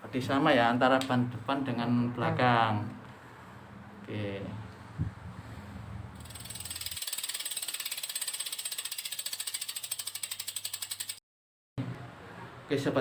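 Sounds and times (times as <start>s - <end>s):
bicycle freehub ticking: 6.2s - 11.2s.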